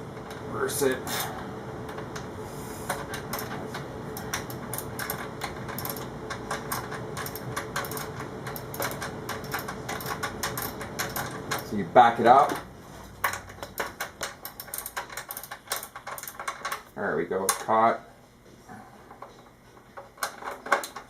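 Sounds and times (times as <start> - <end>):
ratchet wrench clicking: 4.2 - 11.7.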